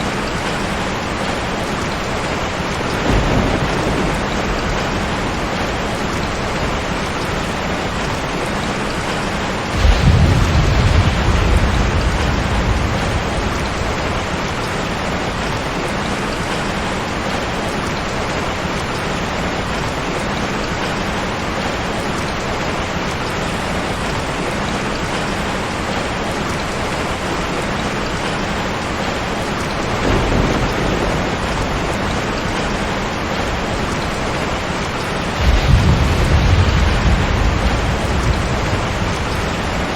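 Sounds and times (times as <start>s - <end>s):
thunder rumbling: 0.0s - 17.7s, 29.6s - 39.9s
heavy rain falling: 0.0s - 39.9s.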